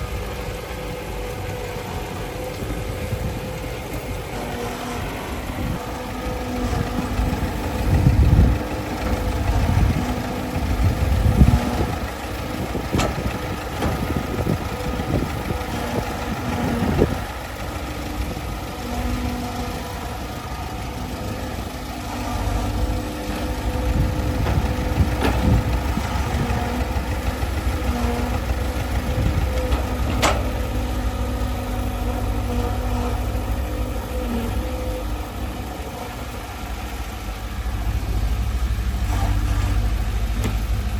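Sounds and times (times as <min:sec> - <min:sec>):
heavy machine engine idling: 0:00.0 - 0:40.9.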